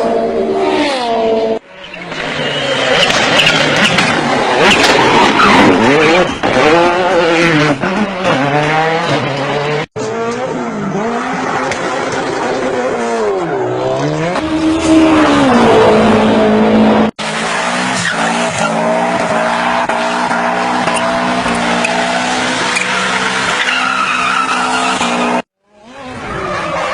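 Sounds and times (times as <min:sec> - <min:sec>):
tyre squeal: 0:01.8 - 0:04.0, 0:17.8 - 0:25.4.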